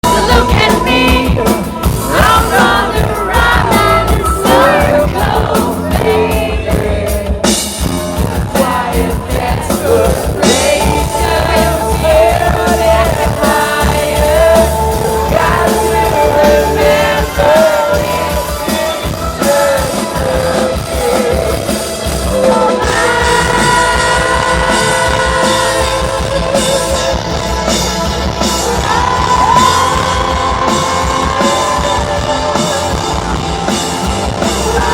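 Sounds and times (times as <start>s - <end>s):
person singing: 0.0s - 34.9s
rock band playing: 0.0s - 34.9s.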